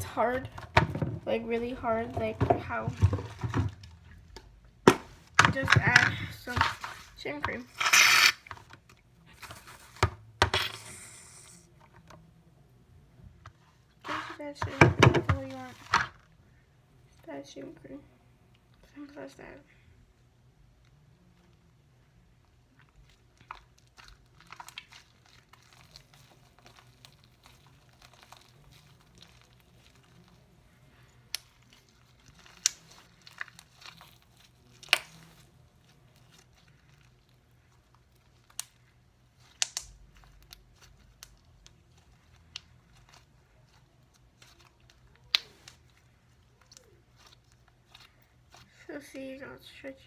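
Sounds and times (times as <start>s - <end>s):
slime sticky clicks and pops: 39.5s - 40.0s.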